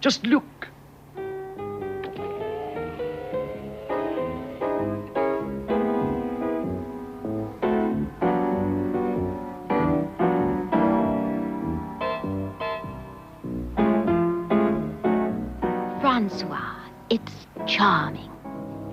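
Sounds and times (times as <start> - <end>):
piano music: 0.8 - 18.9.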